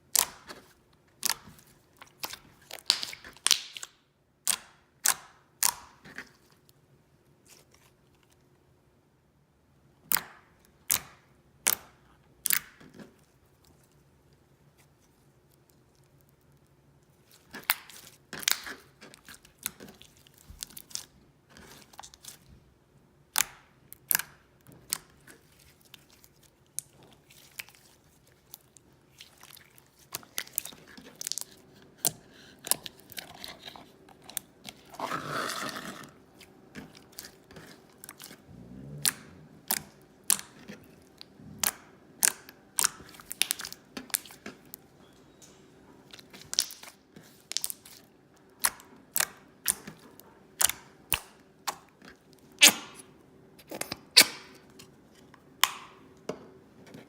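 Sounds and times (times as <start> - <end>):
slime squishing and popping: 0.0 - 6.2, 17.4 - 21.1, 23.3 - 35.0, 36.8 - 44.8, 46.2 - 50.0.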